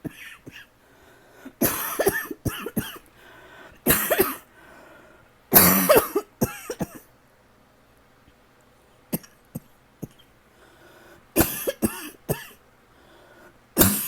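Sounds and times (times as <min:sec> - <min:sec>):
person coughing: 0:00.0 - 0:00.7, 0:01.6 - 0:03.1, 0:03.8 - 0:04.5, 0:05.5 - 0:07.1, 0:11.4 - 0:12.6, 0:13.8 - 0:14.0.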